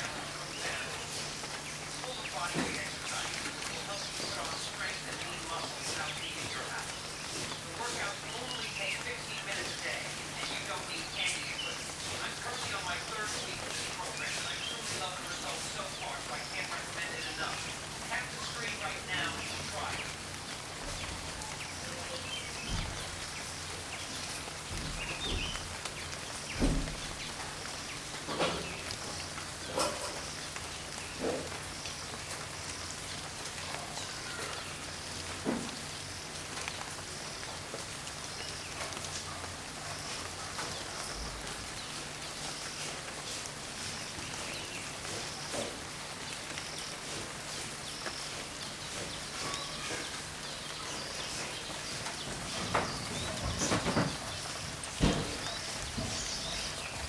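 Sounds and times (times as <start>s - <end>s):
drips and knocks: 0.0s - 57.0s
steady rain: 0.0s - 57.0s.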